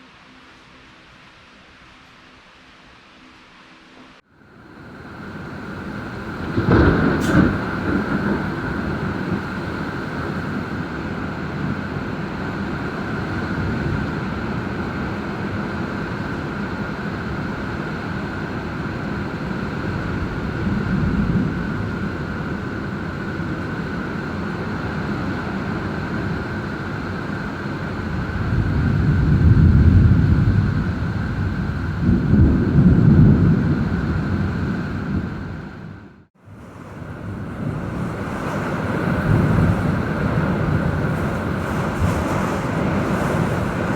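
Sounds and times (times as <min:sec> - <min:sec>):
strong wind on microphone: 0:04.6 - 0:43.9.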